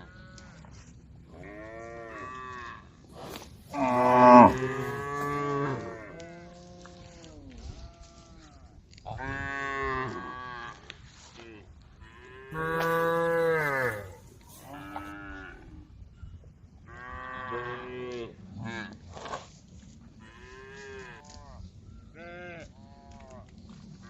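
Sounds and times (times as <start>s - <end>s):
cows mooing: 3.3s - 6.1s, 12.5s - 15.3s.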